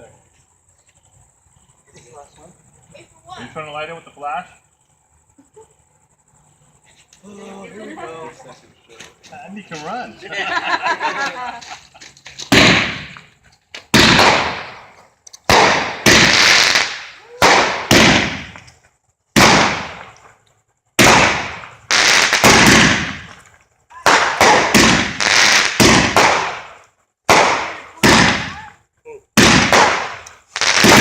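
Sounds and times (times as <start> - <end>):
fireworks bursts with echo: 12.4 - 31.0.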